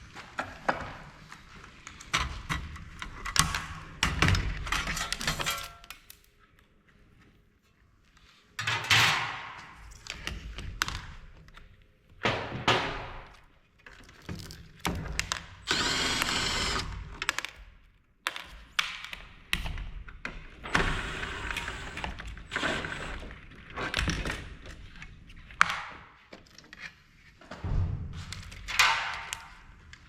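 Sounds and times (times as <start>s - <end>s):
tools and metal parts clicking: 4.8s - 6.2s
cordless drill whirring: 15.6s - 17.0s, 20.7s - 23.4s.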